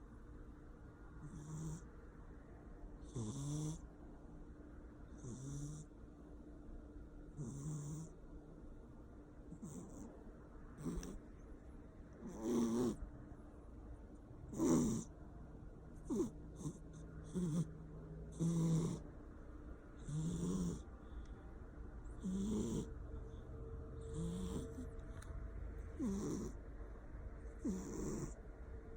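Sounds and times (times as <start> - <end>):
cat snoring: 1.2 - 1.9, 3.0 - 3.8, 5.1 - 5.9, 7.3 - 8.2, 9.5 - 10.2, 10.8 - 11.2, 12.2 - 13.0, 14.5 - 15.1, 16.0 - 19.1, 20.0 - 21.2, 22.0 - 23.4, 24.0 - 26.6, 27.4 - 28.4.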